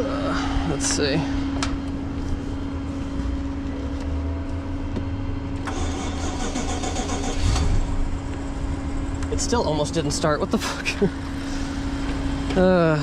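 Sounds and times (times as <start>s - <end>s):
car engine cranking and starting: 5.6s - 9.9s.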